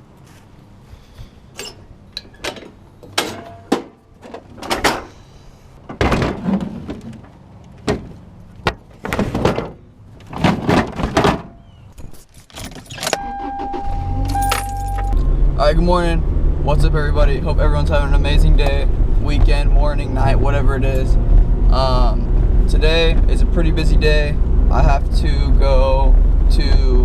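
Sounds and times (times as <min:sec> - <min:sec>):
car engine starting and running: 0:12.6 - 0:27.0
steady chime tone: 0:13.2 - 0:15.2.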